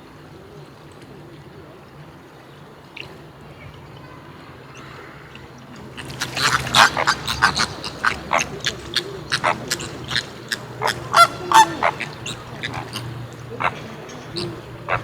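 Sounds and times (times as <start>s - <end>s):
flamingos honking: 4.7s - 15.0s.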